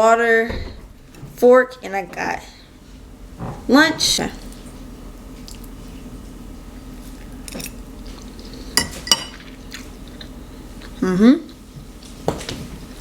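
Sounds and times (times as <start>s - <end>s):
metal fork clinking on a bowl: 8.8s - 9.4s.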